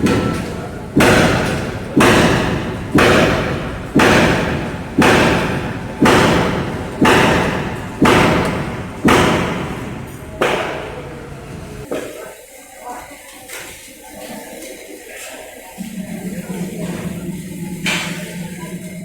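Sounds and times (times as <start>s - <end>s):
heavy thuds: 0.0s - 11.9s.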